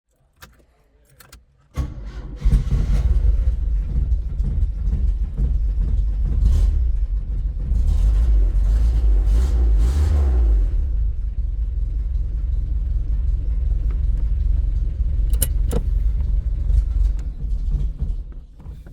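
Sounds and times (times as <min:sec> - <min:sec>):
car engine starting and revving: 0:01.8 - 0:04.4, 0:06.3 - 0:17.2.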